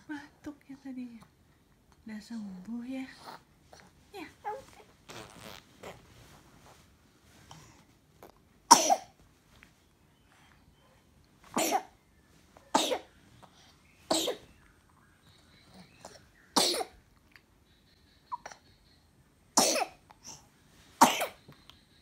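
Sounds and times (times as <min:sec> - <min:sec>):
baby coughing: 0:08.7 - 0:09.2, 0:11.6 - 0:12.0, 0:12.7 - 0:13.1, 0:14.1 - 0:14.5, 0:16.0 - 0:17.0, 0:19.6 - 0:20.4, 0:21.0 - 0:21.4.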